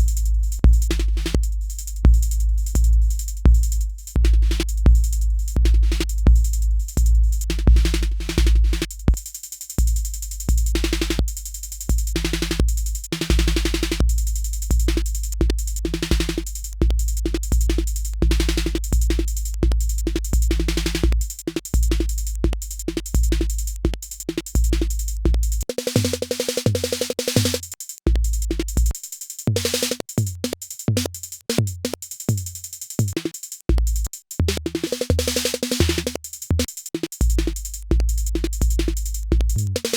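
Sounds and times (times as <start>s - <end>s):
deep bass kicks: 0.0s - 9.2s
noisy hi-hat hits: 0.0s - 39.9s
electronic drum pattern: 11.9s - 39.9s.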